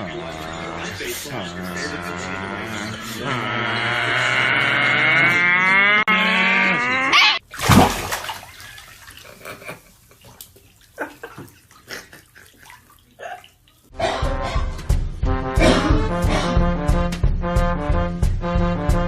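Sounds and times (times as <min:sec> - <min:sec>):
wavering animal cry: 0:00.0 - 0:07.5
water splashing: 0:07.4 - 0:13.9.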